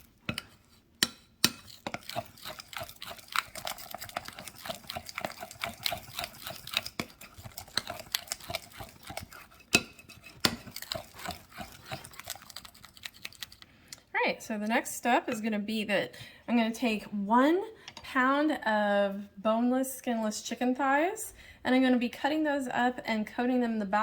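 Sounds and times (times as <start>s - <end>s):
utensil stirring batter in bowl: 0.0s - 13.8s.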